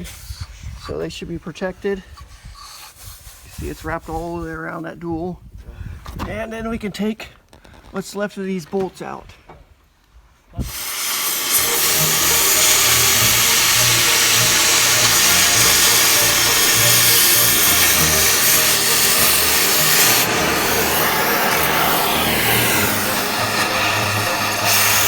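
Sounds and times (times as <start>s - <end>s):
cutting torch hissing: 10.6s - 25.0s
cutting torch lighting pop: 10.6s - 25.0s.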